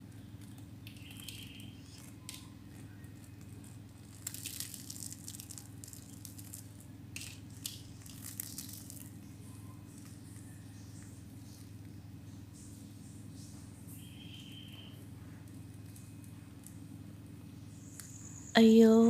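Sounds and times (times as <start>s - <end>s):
crinkling rustles: 0.1s - 9.2s.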